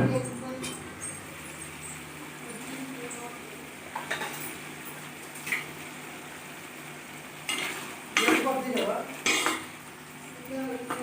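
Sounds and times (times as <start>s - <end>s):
frying oil sizzling: 0.0s - 11.0s
spoon scraping metal pan: 7.5s - 8.5s, 9.2s - 9.7s.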